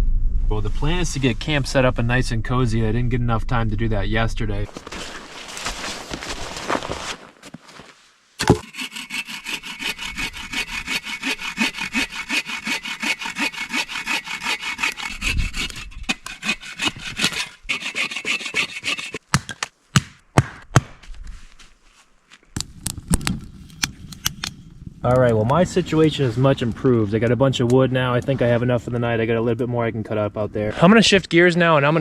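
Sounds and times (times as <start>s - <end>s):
hand saw cutting wood: 8.4s - 19.3s.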